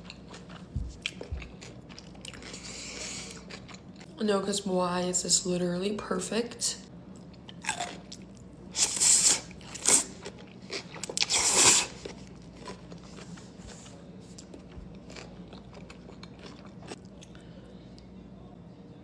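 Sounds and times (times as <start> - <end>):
quiet chewing with wet clicks: 0.0 - 2.6, 12.0 - 18.1.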